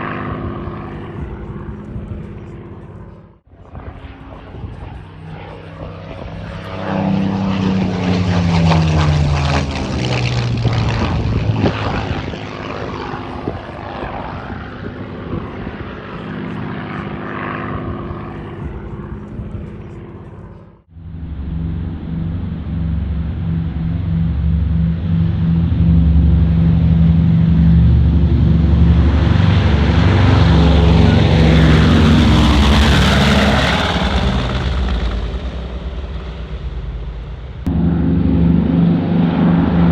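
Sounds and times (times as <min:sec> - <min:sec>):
propeller aircraft flying past: 0:00.0 - 0:39.9
engine pulsing steadily: 0:13.6 - 0:39.9.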